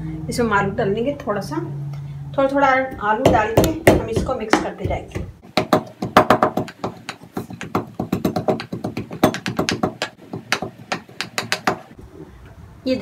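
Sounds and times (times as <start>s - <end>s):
food pounding strikes: 3.3s - 12.0s.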